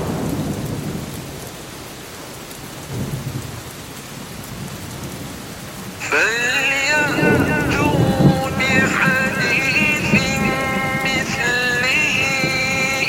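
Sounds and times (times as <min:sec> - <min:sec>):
steady rain falling: 0:00.0 - 0:13.0
thunder rumbling: 0:05.9 - 0:13.0.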